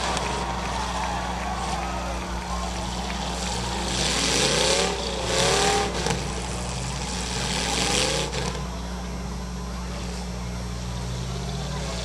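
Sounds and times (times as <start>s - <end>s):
car engines revving: 0.0s - 12.0s
low engine drone: 0.0s - 12.0s.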